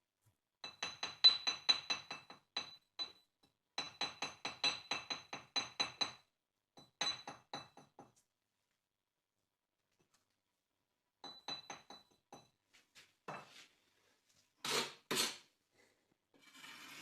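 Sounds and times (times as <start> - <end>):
metal tool tapping brick: 0.6 - 8.2.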